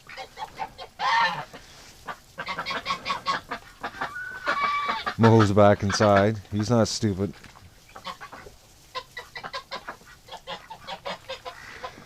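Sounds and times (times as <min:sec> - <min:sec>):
goose honking loudly: 0:00.0 - 0:01.6, 0:02.4 - 0:06.3
geese and ducks calling: 0:00.0 - 0:12.0.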